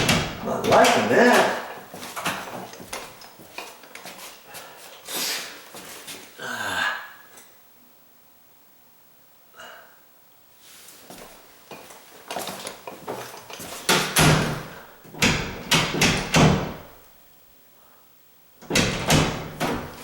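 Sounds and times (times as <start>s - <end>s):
door knocking against frame: 0.0s - 1.6s, 13.9s - 17.0s, 18.7s - 20.0s
door latch clicking: 13.9s - 17.0s.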